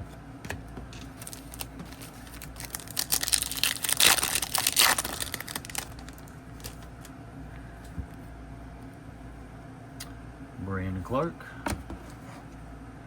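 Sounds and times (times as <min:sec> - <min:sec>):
foil wrapper tearing and crinkling: 0:01.1 - 0:06.8.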